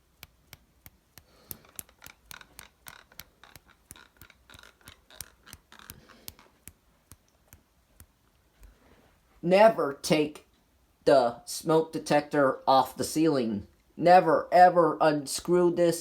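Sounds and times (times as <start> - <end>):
small hard objects clicking: 0.0 - 8.8.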